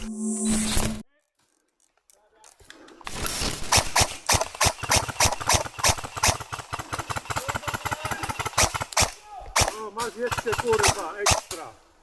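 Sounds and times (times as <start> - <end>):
airsoft gunfire: 3.4 - 11.7.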